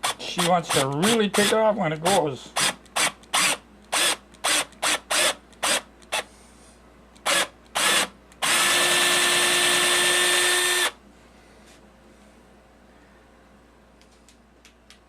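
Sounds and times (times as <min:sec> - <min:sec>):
electric drill drilling: 0:00.0 - 0:01.6, 0:02.6 - 0:06.3, 0:07.2 - 0:11.0.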